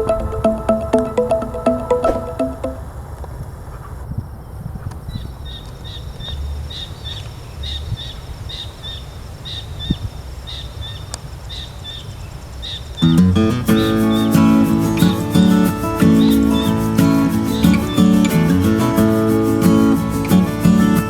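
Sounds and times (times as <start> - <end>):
loud music: 0.0 - 2.8.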